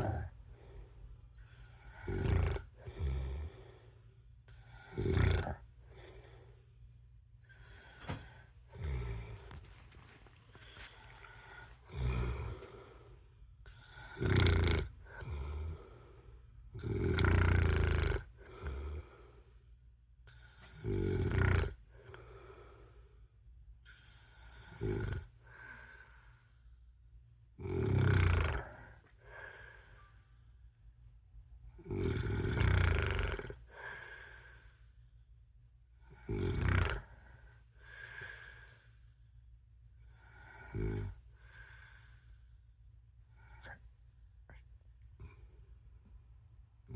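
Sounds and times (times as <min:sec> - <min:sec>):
man snoring: 0:00.0 - 0:00.4, 0:01.7 - 0:03.9, 0:04.6 - 0:06.4, 0:07.8 - 0:09.6, 0:10.7 - 0:13.1, 0:13.7 - 0:19.4, 0:20.6 - 0:22.8, 0:24.3 - 0:25.4, 0:27.6 - 0:29.7, 0:31.8 - 0:34.6, 0:36.0 - 0:38.7, 0:40.1 - 0:41.9
quiet breath out: 0:05.6 - 0:14.1, 0:21.9 - 0:26.8, 0:28.6 - 0:30.7, 0:33.6 - 0:35.3, 0:37.0 - 0:39.4, 0:40.1 - 0:42.6.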